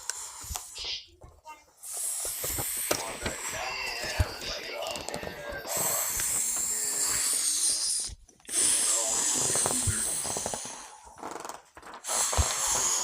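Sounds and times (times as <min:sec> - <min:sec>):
cartoon air hissing: 0:00.0 - 0:01.2, 0:01.8 - 0:03.8, 0:05.7 - 0:11.0, 0:12.0 - 0:13.0.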